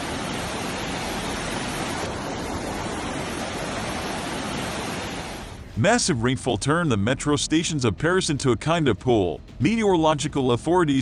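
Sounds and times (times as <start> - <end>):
water rushing: 0.0 - 7.0.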